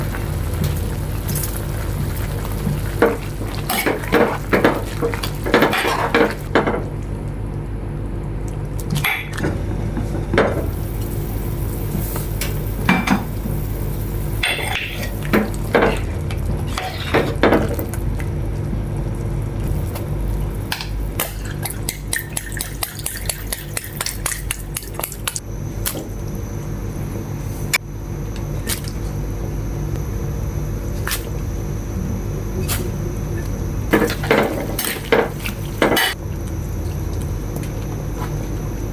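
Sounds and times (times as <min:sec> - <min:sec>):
steady low hum: 0:00.0 - 0:38.9.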